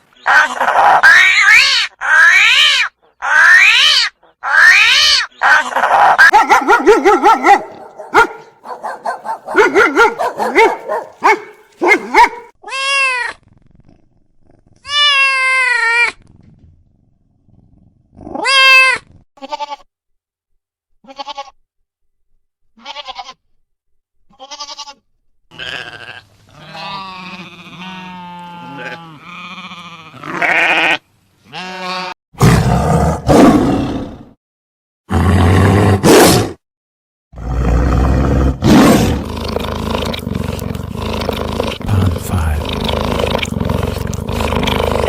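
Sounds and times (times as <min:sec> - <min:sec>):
animal low grunting: 0:06.3 - 0:12.5, 0:37.4 - 0:45.0.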